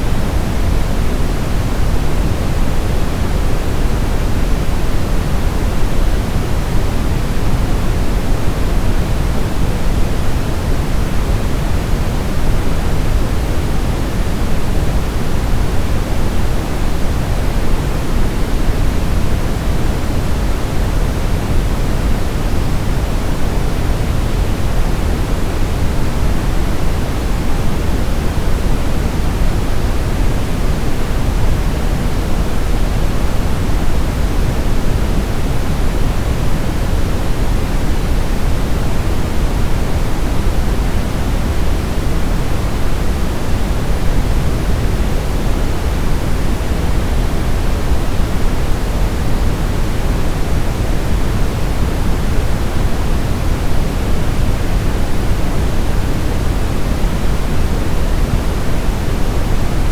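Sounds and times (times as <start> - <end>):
white noise hiss: 0.0 - 59.9.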